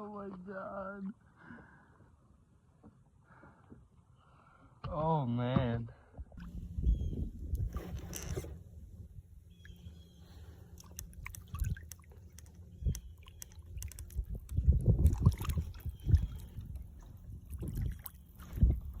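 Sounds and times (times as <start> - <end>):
wind buffeting microphone: 6.4 - 9.3, 12.7 - 19.0.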